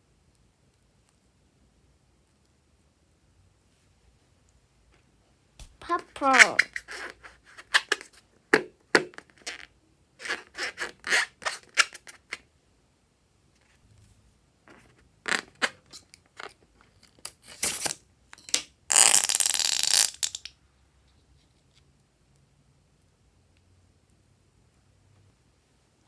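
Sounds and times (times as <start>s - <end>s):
slime crackling and popping: 18.9s - 20.5s.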